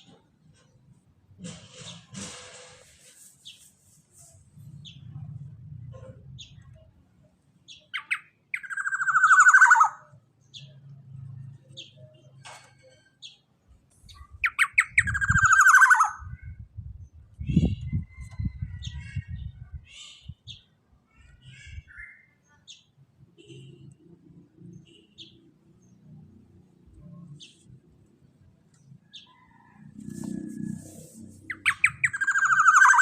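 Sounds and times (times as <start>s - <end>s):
bird harsh falling calls: 31.5s - 33.0s.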